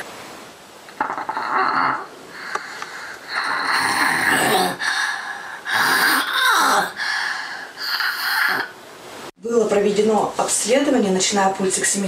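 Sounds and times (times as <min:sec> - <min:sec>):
child snoring: 0:01.0 - 0:08.7.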